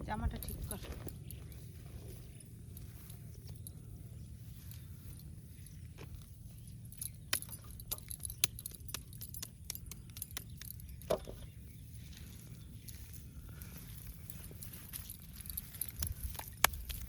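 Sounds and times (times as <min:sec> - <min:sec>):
steady low rumble: 0:00.0 - 0:17.0
small hard objects clinking: 0:04.4 - 0:17.0.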